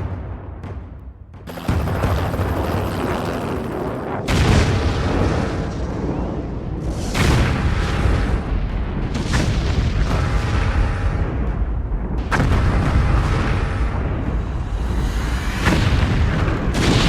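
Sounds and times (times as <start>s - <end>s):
explosion booms: 4.2s - 8.0s.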